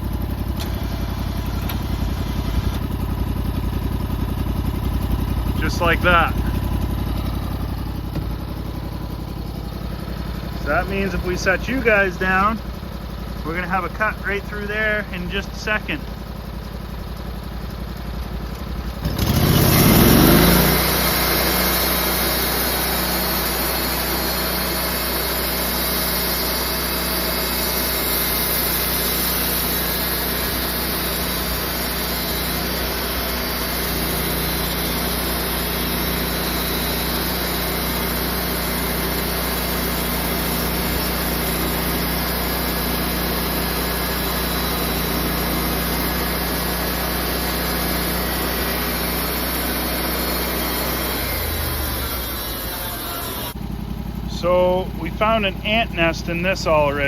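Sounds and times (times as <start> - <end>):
small gas engine revving: 0.0 - 12.8, 18.5 - 57.0
saw blade cutting log: 19.1 - 53.6.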